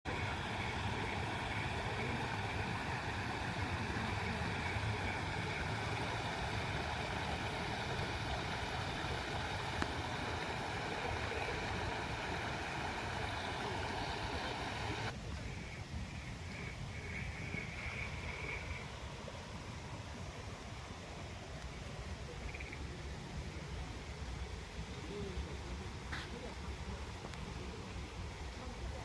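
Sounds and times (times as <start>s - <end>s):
water rushing: 0.0s - 15.2s.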